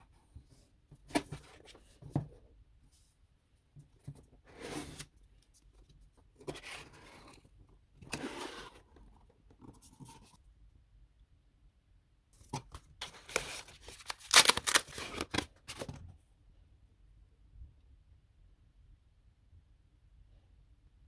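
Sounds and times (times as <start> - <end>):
packaging scraping and rustling: 13.0 - 15.9.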